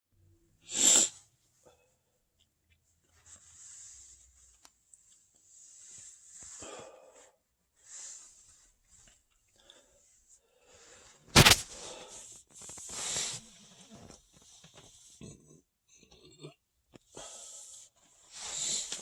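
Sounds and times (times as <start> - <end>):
person's loud mouth sound: 11.4 - 11.6.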